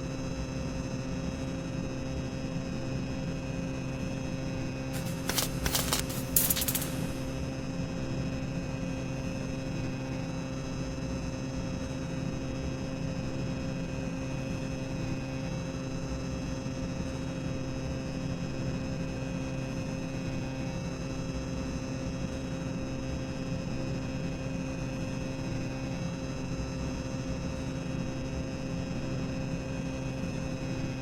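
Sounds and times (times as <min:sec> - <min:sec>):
boiler machinery drone: 0:05.0 - 0:07.5.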